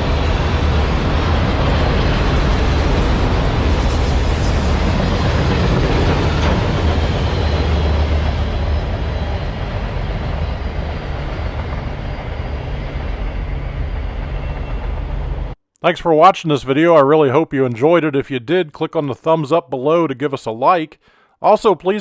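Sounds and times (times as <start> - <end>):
train rumbling past: 0.0 - 15.6.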